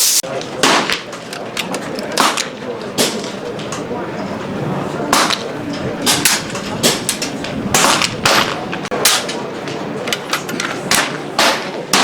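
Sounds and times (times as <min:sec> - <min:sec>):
air rifles firing: 0:00.0 - 0:03.4, 0:05.1 - 0:09.4.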